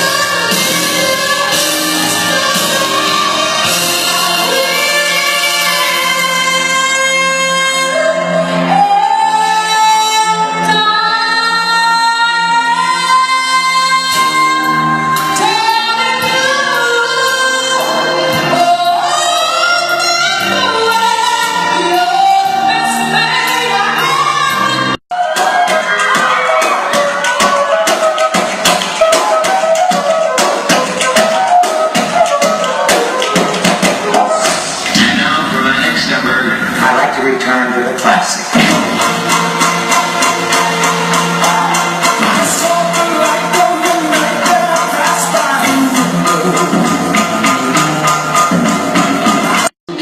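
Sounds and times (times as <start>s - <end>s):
busy percussive beat: 0.0s - 6.4s, 25.1s - 50.0s
instrumental backing: 0.0s - 50.0s
person singing: 38.0s - 48.5s.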